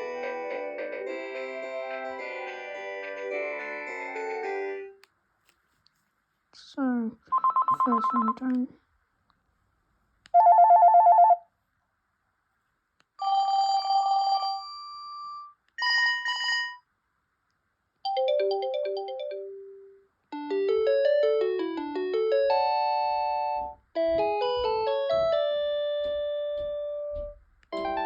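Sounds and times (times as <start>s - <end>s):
cordless phone electronic ringtones: 7.3s - 8.4s, 10.4s - 11.4s, 15.8s - 16.8s.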